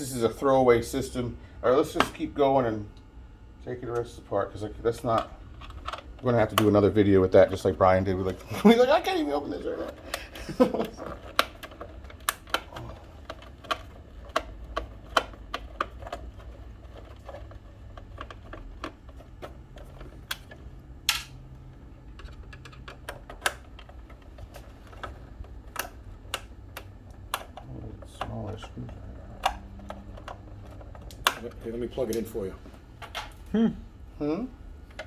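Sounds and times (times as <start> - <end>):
faint low hum: 0.0 - 35.0
plastic parts being handled: 5.0 - 32.4.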